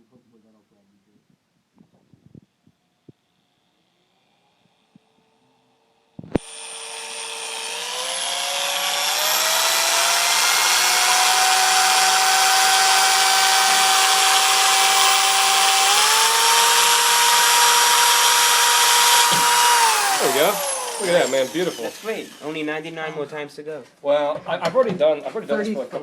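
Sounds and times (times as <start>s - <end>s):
electric drill running: 6.2s - 22.9s.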